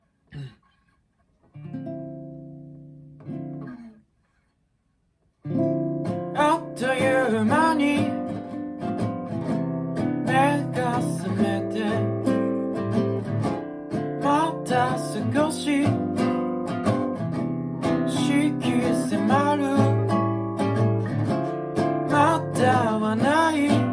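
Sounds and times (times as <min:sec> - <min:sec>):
acoustic guitar playing: 0:01.5 - 0:04.0, 0:05.4 - 0:23.9.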